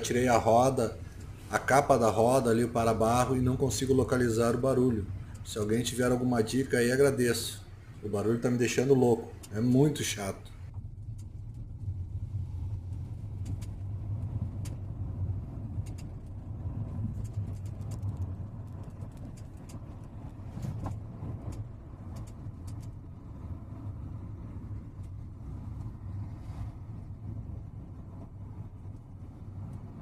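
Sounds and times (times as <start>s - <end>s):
road rumble in car cabin: 0.0s - 30.0s.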